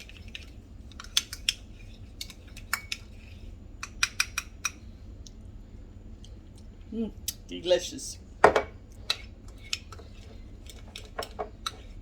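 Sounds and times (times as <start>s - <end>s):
low background hum: 0.0s - 12.0s
utensil clinking against dish: 8.4s - 12.0s.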